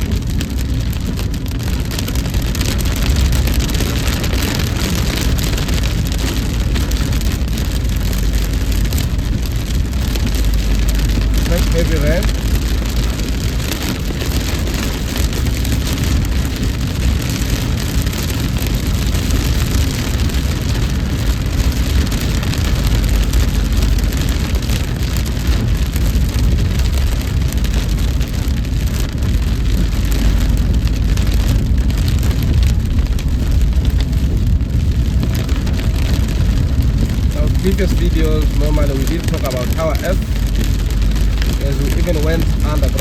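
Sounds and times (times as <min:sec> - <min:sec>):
car and tyres rumbling on wet road: 0:00.0 - 0:43.0
heavy rain hiss: 0:01.7 - 0:43.0.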